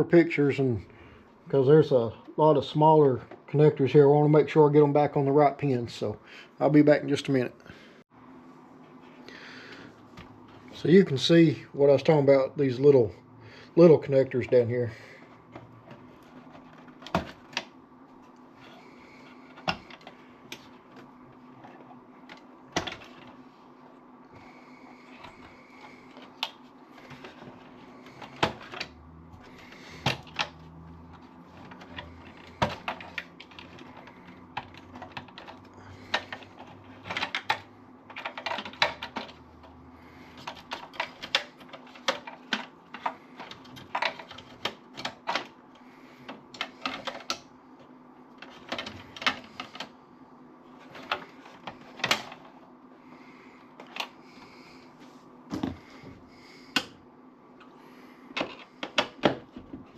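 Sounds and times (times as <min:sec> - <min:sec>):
faint steady hum: 0:00.0 - 0:59.9
clicks and taps in computer case: 0:58.4 - 0:59.9.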